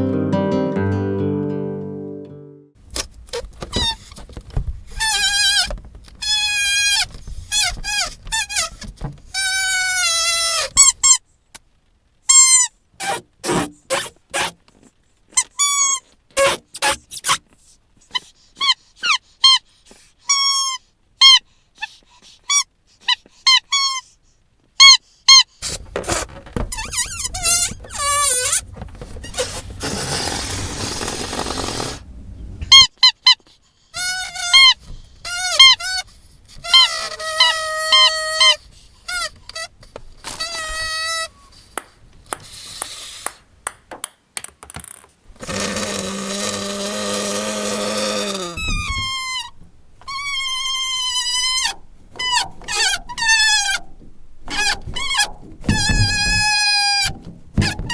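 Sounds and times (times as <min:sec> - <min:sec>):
squeaky dog toy squeaking: 0:05.0 - 0:11.2, 0:12.3 - 0:14.6, 0:15.4 - 0:17.4, 0:18.1 - 0:19.7, 0:20.3 - 0:24.2, 0:24.8 - 0:25.6, 0:32.7 - 0:36.0, 0:36.6 - 0:39.7, 0:48.6 - 0:49.5, 0:50.1 - 0:53.9, 0:54.5 - 0:57.9
background hiss: 0:38.6 - 0:44.4.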